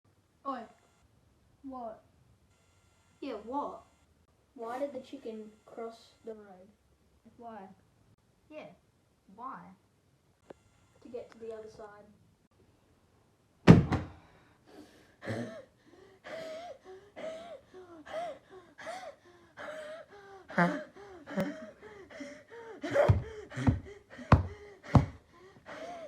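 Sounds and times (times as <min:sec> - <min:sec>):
man's wheezing laugh: 0:20.4 - 0:24.4.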